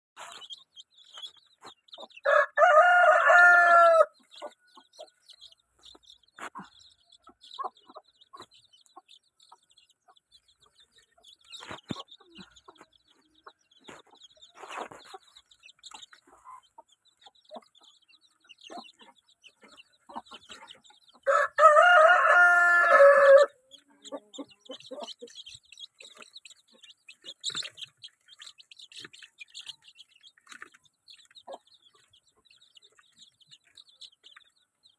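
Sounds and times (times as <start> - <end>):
chicken clucks and chirps: 0.2 - 34.9
rooster crowing: 2.3 - 4.1, 21.3 - 23.5.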